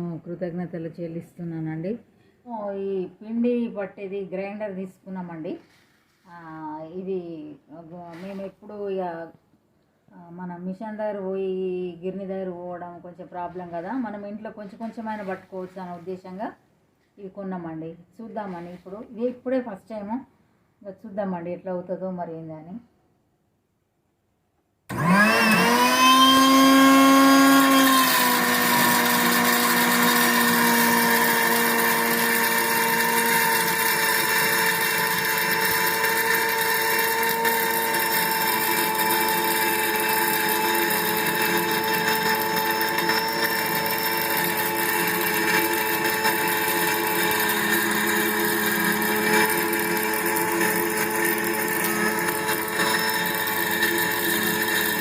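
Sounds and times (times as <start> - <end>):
flour grinder motor whining: 24.9 - 55.0.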